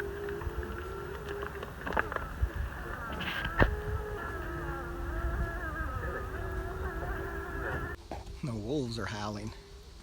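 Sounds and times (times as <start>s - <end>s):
wolves howling: 0.0s - 8.0s.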